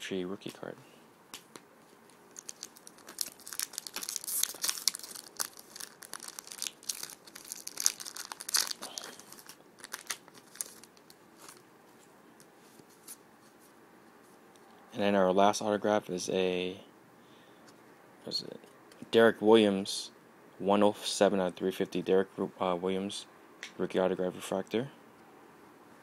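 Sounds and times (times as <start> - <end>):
foil wrapper crinkling and tearing: 2.1 - 11.6.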